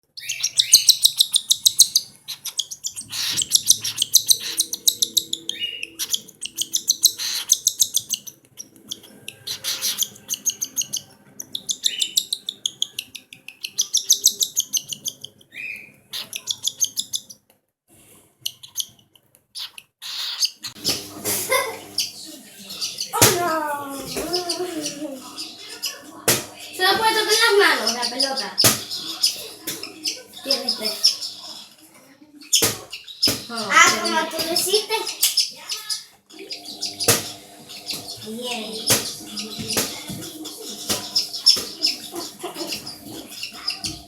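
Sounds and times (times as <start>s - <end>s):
chicks begging calls: 0.1s - 17.4s, 19.6s - 31.8s, 32.4s - 44.0s
rising chirps: 2.6s - 15.1s.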